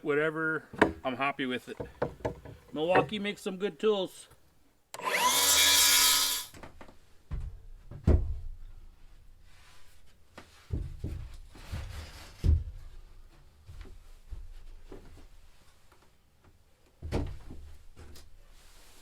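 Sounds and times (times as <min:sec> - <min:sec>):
building materials thumping: 0:00.8 - 0:03.2.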